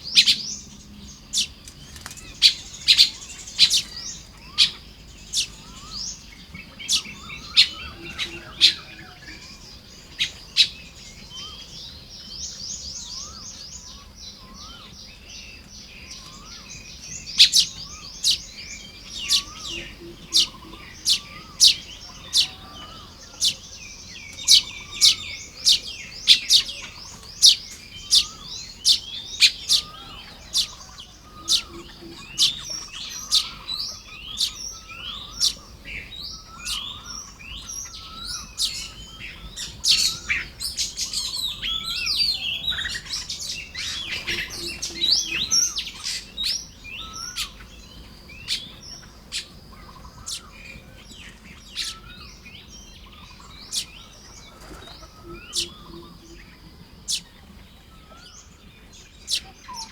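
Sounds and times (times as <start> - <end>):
birds chirping: 0.0 - 59.9.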